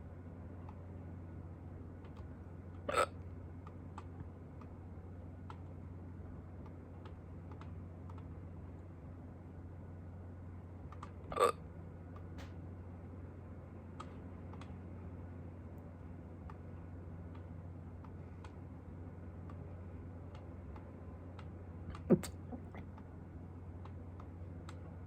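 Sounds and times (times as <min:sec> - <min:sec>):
low steady hum: 0:00.0 - 0:25.0
woman hiccuping: 0:22.0 - 0:22.8.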